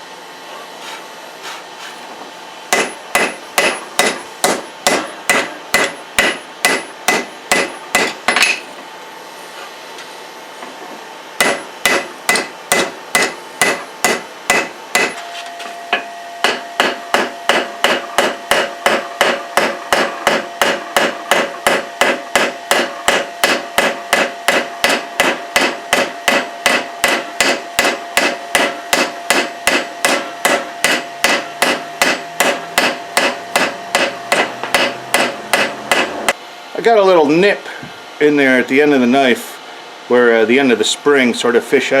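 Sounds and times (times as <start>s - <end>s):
hammer striking steel on anvil: 2.7s - 8.7s, 11.4s - 36.4s
metallic ringing tone: 15.2s - 17.5s.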